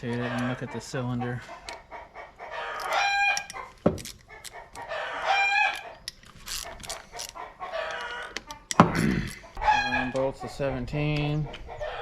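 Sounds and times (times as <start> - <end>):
hens clucking: 0.0 - 12.0
rooster crowing: 4.9 - 5.8, 9.6 - 10.2, 11.8 - 12.0.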